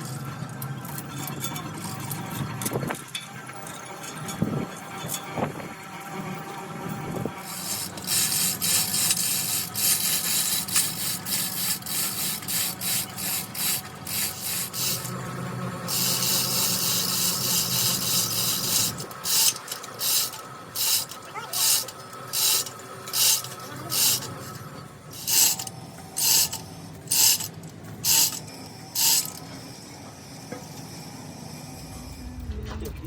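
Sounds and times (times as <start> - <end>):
rasping scraping strokes: 7.2 - 29.7.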